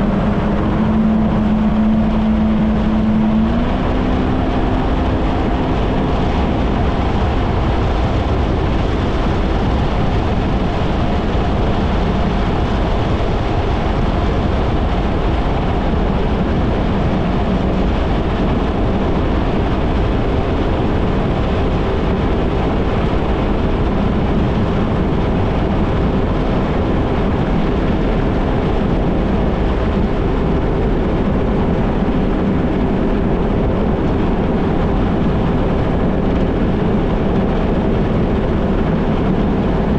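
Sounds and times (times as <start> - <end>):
jet ski engine running: 0.0 - 39.9.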